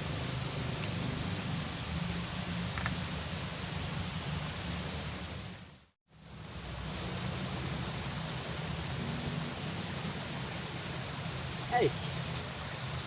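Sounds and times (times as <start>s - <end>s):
river water rushing: 6.2s - 13.0s.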